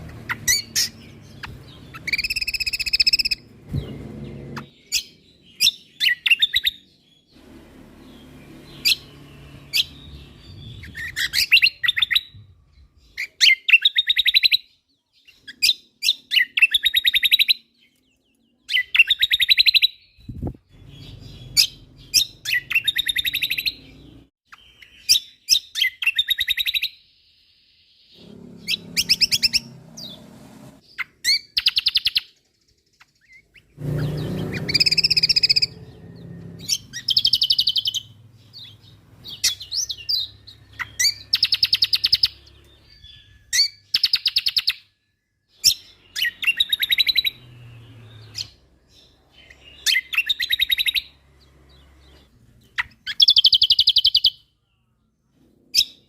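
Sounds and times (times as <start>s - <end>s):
songbird rattling trills: 33.2s - 42.8s.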